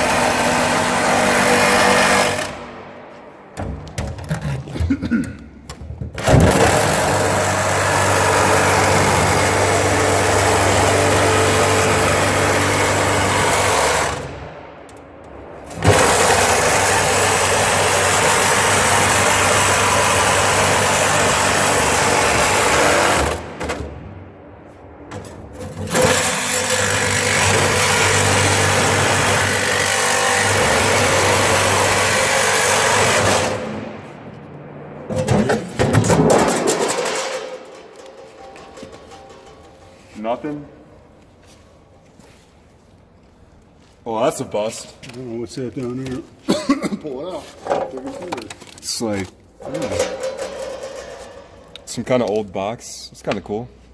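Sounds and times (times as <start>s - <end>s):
reciprocating saw cutting steel: 0.0s - 2.7s, 6.4s - 14.4s, 15.7s - 23.4s, 25.6s - 33.8s.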